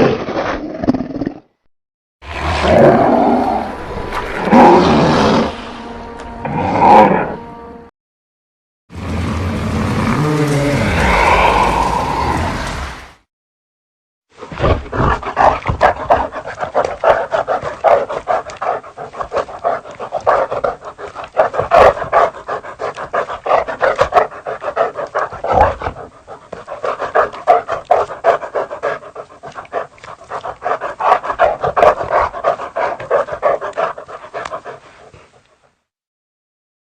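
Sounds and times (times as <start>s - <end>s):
dog panting: 15.2s - 35.6s.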